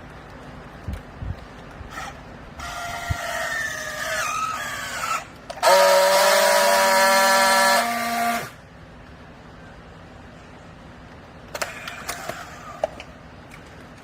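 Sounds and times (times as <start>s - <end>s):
hydraulic baler whining: 1.9s - 8.8s.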